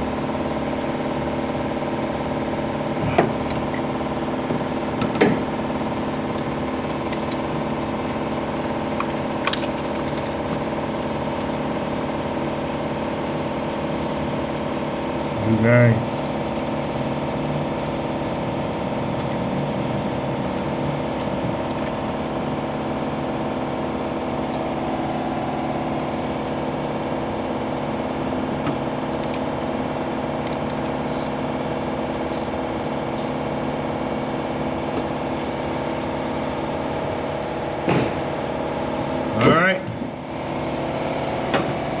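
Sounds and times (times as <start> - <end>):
car engine idling with misfire: 0.0 - 42.0.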